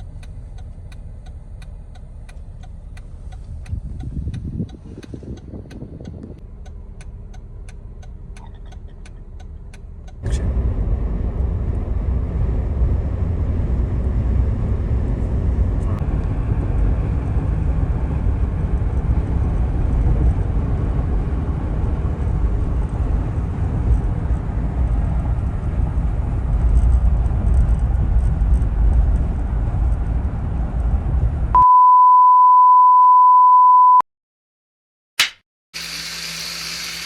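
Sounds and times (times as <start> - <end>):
low steady rumble: 0.0 - 31.7
electronic beep: 31.6 - 34.0.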